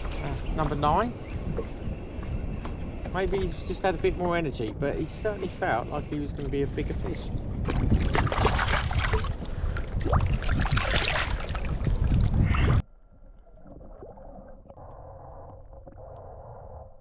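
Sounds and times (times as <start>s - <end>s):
wind on microphone: 0.0s - 12.9s
water splashing around kayak: 7.4s - 12.8s.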